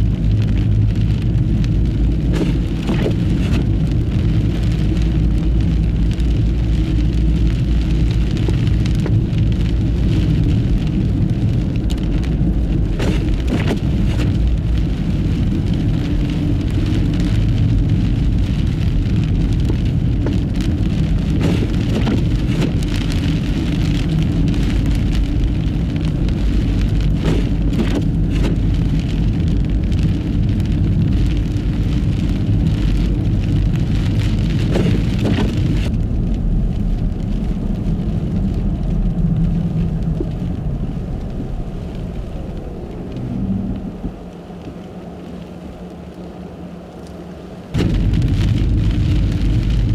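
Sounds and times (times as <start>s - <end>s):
car road rumble and hiss: 0.0s - 49.9s
sharp clicks and knocks: 2.3s - 3.8s, 12.9s - 14.5s, 19.6s - 23.1s, 26.9s - 28.7s, 34.5s - 35.9s.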